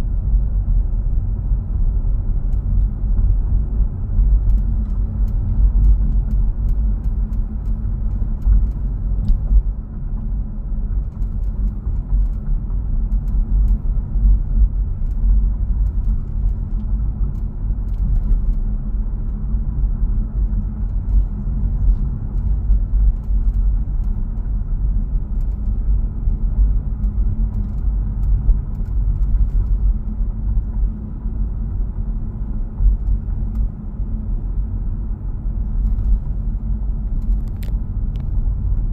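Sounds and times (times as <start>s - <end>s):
road rumble inside car: 0.0s - 38.9s
faint small clicks: 37.1s - 38.4s.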